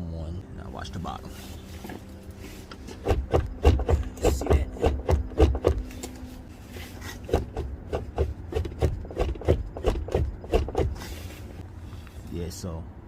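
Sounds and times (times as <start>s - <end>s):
car door clunking on hinges: 2.8s - 5.9s.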